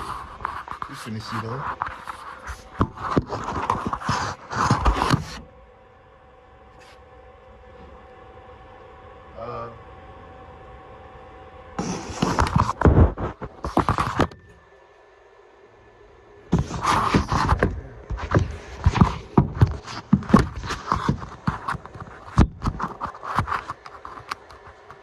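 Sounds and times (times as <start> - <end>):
scraping and rubbing at microphone: 0.0 - 5.4, 6.8 - 7.0, 11.8 - 14.4, 16.5 - 25.0.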